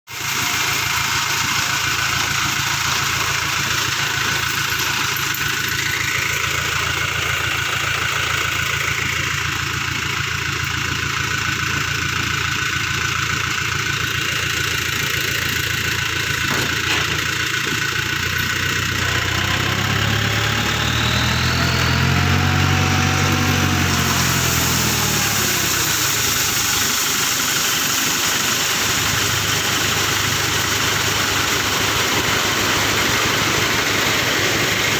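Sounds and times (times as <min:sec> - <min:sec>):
vehicle engine running: 0:00.1 - 0:34.9
heavy rain: 0:21.4 - 0:34.9.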